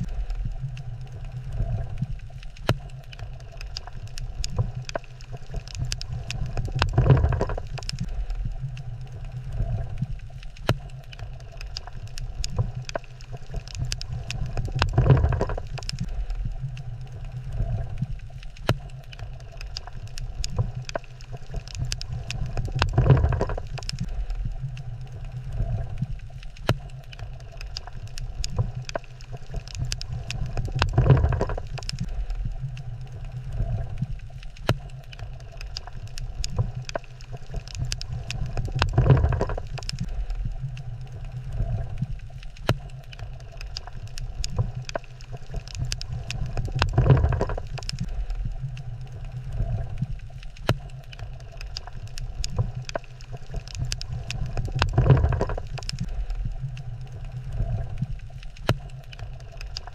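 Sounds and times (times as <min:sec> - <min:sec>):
low underwater rumble: 0:00.0 - 0:59.9
underwater sharp clicks: 0:00.0 - 0:59.9.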